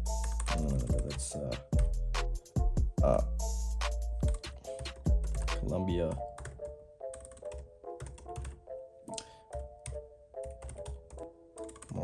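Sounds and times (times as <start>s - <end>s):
background music with pulsing bass: 0.0s - 6.2s
keyboard typing clicks: 4.2s - 12.0s.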